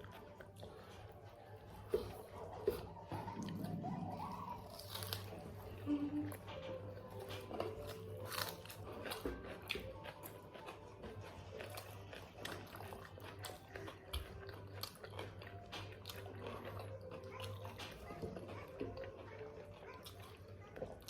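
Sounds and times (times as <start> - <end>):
chewing and crunching food: 0.0 - 21.0.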